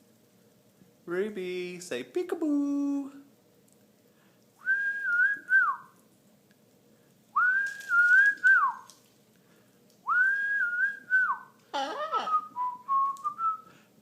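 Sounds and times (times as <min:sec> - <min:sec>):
person whistling: 0:04.6 - 0:05.9, 0:07.4 - 0:08.8, 0:10.1 - 0:11.5, 0:12.2 - 0:13.7.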